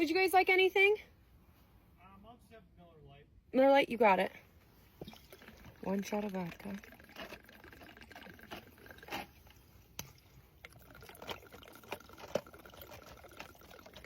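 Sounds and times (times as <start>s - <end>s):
bottles and cups clicking: 5.0s - 14.0s
liquid poured into cups: 5.0s - 14.0s.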